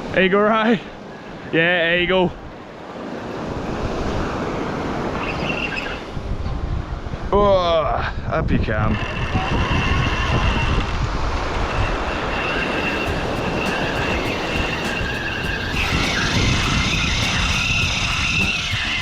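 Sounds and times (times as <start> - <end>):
surf rumble: 0.0 - 19.0
wind buffeting microphone: 0.0 - 19.0
thin high whine: 3.2 - 6.3, 8.6 - 19.0.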